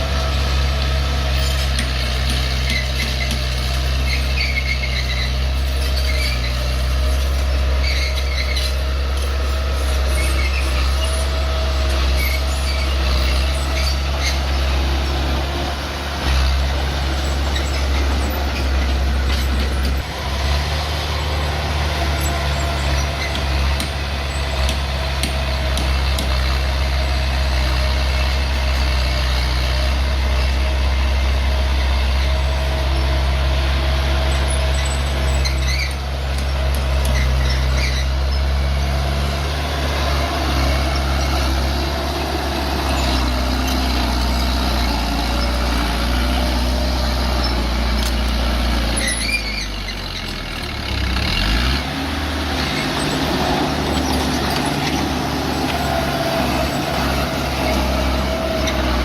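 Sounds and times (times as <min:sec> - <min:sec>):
bulldozer diesel engine: 0:00.0 - 0:59.0
short high squeals: 0:02.6 - 0:15.1, 0:16.2 - 0:24.7, 0:34.2 - 0:36.2, 0:37.0 - 0:38.8, 0:48.8 - 0:50.4.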